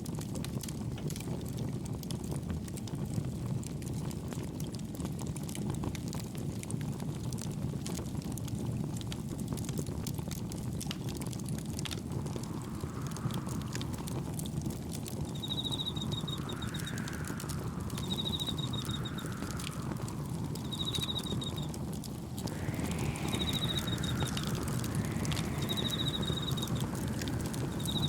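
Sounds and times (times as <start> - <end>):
wood fire crackling: 0.1 - 28.0
wind rushing: 11.1 - 28.0.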